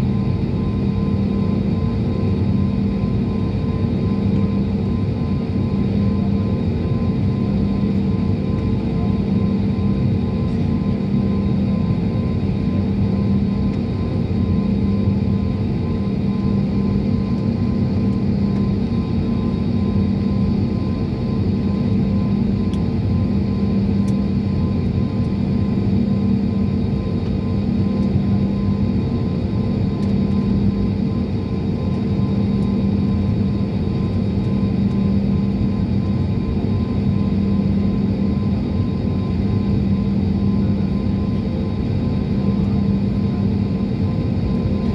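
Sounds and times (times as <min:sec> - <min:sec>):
jet engine drone and rushing air: 0:09.3 - 0:44.9.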